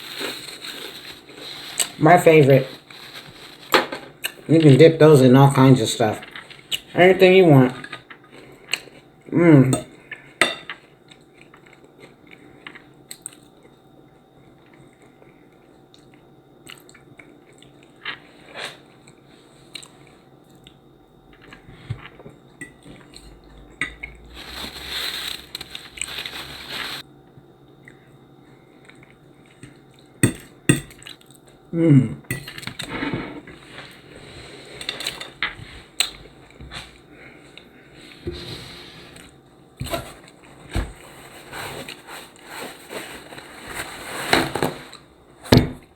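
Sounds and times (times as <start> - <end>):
cutlery clinking on a dish: 9.8 - 10.8
chewing and crunching: 10.1 - 20.8, 28.7 - 30.2.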